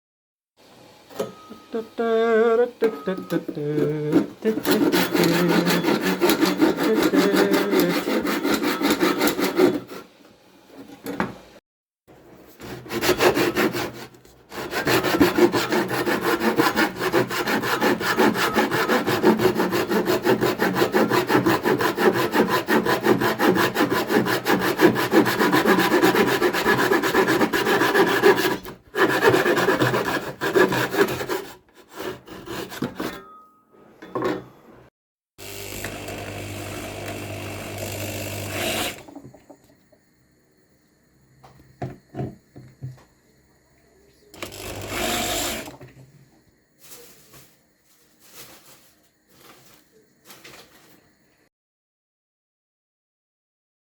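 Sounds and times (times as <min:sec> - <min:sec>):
reciprocating saw cutting bone: 0:04.5 - 0:10.1, 0:12.6 - 0:33.2.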